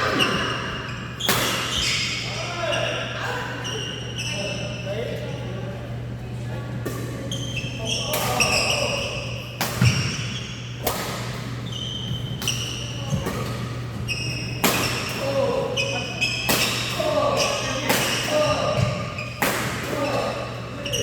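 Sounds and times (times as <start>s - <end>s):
shoes squeaking on court floor: 0.0s - 3.0s, 3.6s - 5.6s, 7.2s - 19.4s, 20.0s - 21.0s
racket hitting shuttlecock: 10.8s - 11.5s, 14.6s - 15.3s, 16.4s - 17.0s.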